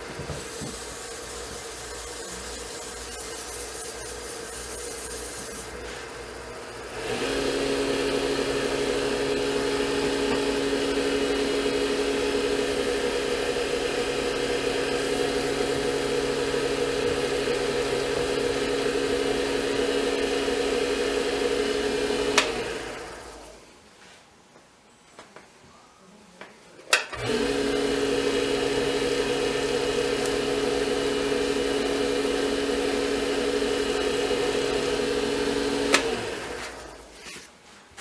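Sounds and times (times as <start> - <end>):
wood lathe motor whirring: 6.8 - 23.5, 27.1 - 37.1.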